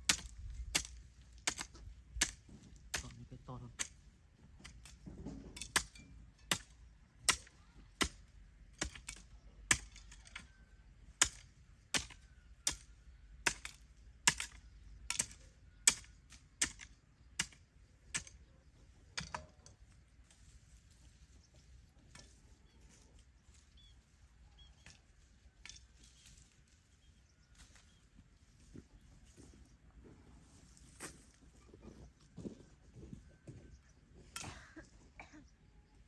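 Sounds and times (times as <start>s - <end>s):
hoe striking hard ground: 0.0s - 10.5s, 11.2s - 18.4s, 19.2s - 19.8s.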